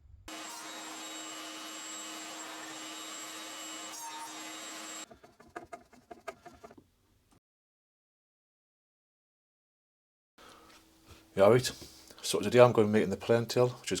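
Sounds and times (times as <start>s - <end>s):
power tool running on wood: 0.3s - 5.1s
scraping strokes on wood: 3.6s - 6.8s.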